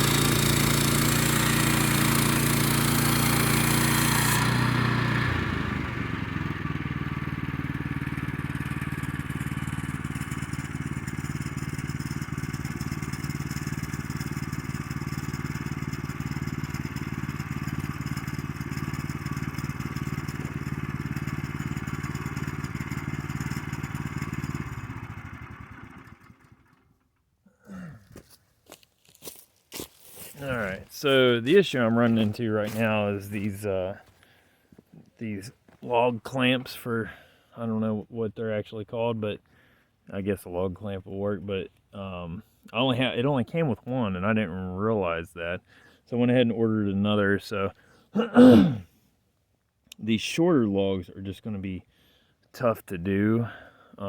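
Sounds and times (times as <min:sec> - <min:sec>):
bandsaw blade sawing wood: 0:00.0 - 0:05.7
gas engine running: 0:00.0 - 0:27.0.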